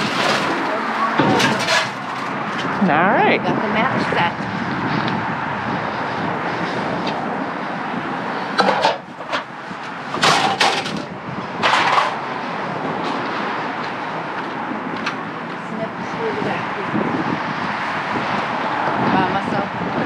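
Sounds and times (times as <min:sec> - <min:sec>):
objects knocking and scraping: 0:00.0 - 0:02.8, 0:08.5 - 0:12.3
outdoor background hum: 0:00.0 - 0:17.2.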